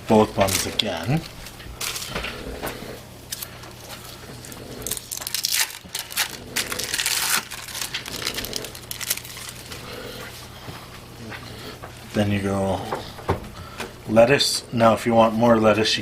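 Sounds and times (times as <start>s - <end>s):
plastic packaging crinkling: 0.1s - 2.4s, 3.3s - 9.9s.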